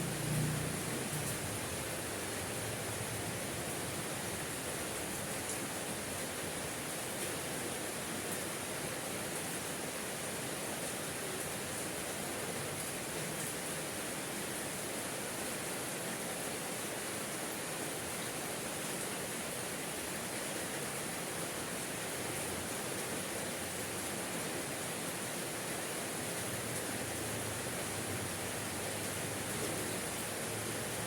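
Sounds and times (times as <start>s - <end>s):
steady rainfall: 0.0s - 31.0s.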